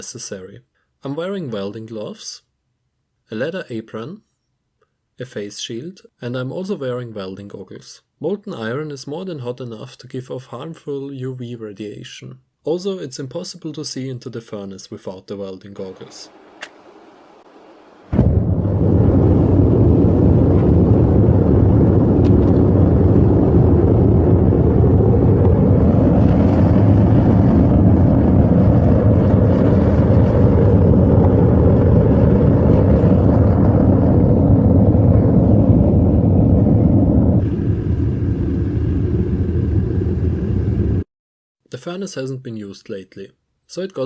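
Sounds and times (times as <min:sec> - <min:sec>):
propane burner roaring: 0:16.3 - 0:41.0.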